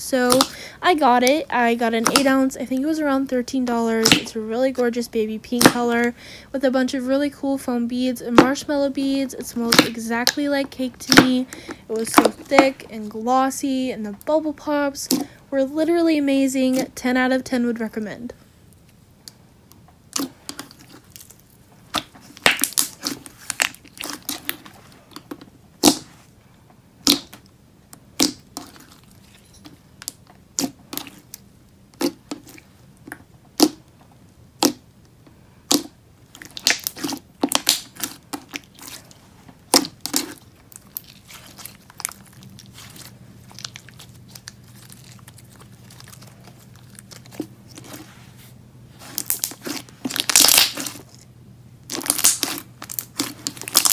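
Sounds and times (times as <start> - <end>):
soft crinkling: 18.3 - 33.3, 35.1 - 53.9.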